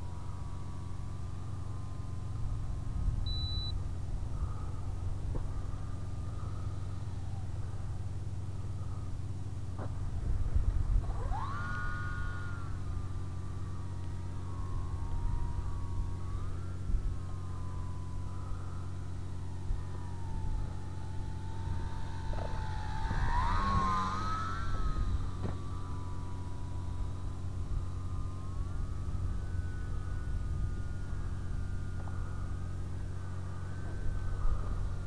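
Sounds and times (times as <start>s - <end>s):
electric motor and propeller whining: 0.0s - 35.0s
low rumble: 0.0s - 35.0s.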